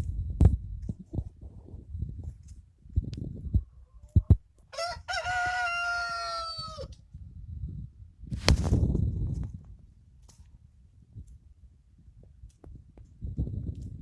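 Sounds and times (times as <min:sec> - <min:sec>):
rooster crowing: 0:04.7 - 0:06.9.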